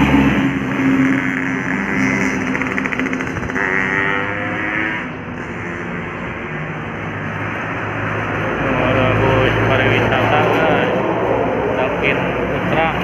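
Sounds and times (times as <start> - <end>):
vehicle engines on road: 0.0 - 13.0.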